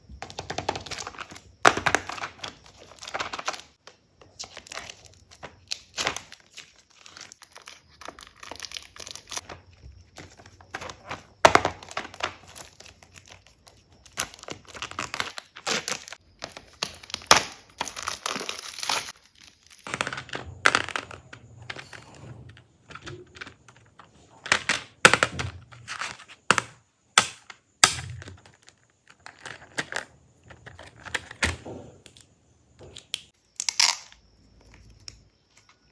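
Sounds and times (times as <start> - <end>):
wrapping crinkling and tearing: 11.8 - 19.9
clicks and thunks of items: 19.8 - 33.7.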